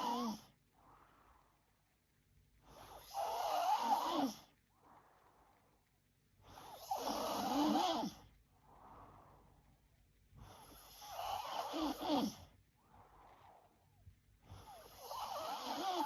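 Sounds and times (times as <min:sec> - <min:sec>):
woman snoring: 0:00.0 - 0:00.5, 0:02.8 - 0:04.5, 0:06.6 - 0:08.3, 0:10.5 - 0:12.5, 0:14.5 - 0:16.0
soft breath: 0:00.0 - 0:16.0.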